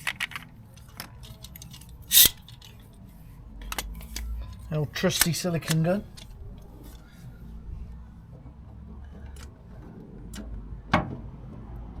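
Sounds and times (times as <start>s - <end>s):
caulking gun trigger clicks: 2.1s - 2.4s.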